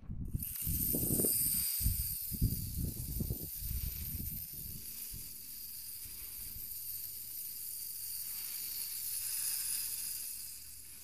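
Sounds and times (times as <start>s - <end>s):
wind buffeting microphone: 0.0s - 5.2s
quadcopter motors whining: 0.3s - 11.0s.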